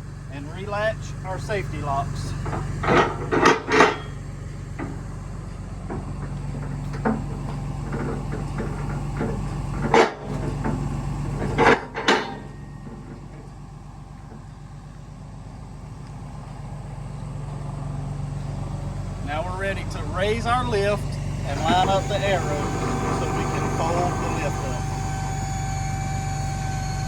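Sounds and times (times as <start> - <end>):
truck engine idling: 0.0 - 27.0
metal latches clanking: 2.4 - 13.6.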